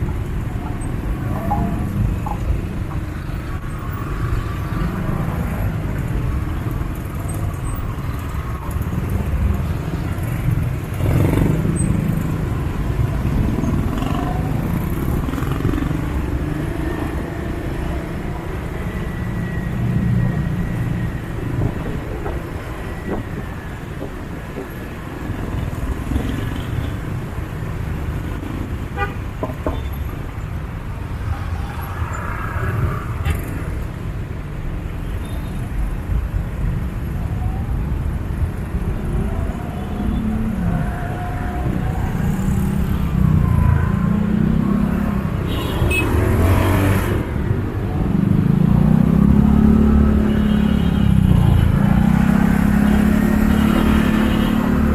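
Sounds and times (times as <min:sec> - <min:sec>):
cars and motorcycles passing: 0:00.0 - 0:54.9
vehicle horn: 0:29.0 - 0:29.2.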